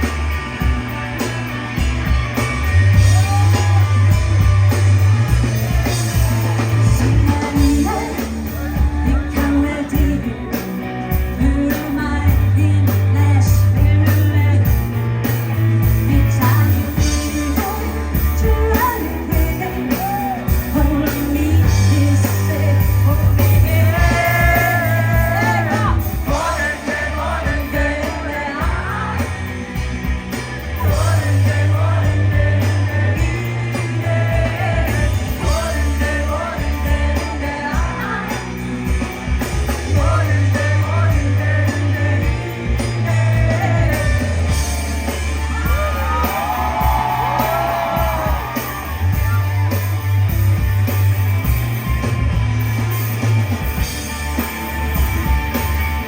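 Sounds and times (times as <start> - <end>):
bass line: 0.0 - 56.0
drums: 0.0 - 56.0
electric guitar: 0.0 - 56.0
person singing lead vocal: 5.5 - 15.0, 15.8 - 30.0, 30.6 - 49.4.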